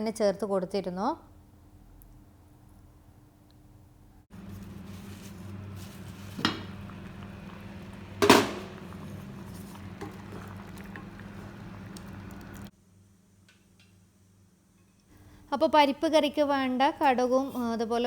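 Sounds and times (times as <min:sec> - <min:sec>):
seeds and garlic sizzling in oil: 0:04.4 - 0:12.7
utensil knocking on pan: 0:08.2 - 0:08.9.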